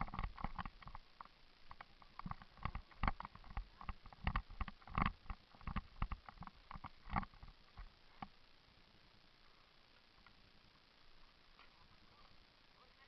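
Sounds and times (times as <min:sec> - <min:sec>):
irregular knocks and thumps: 0:00.0 - 0:08.3.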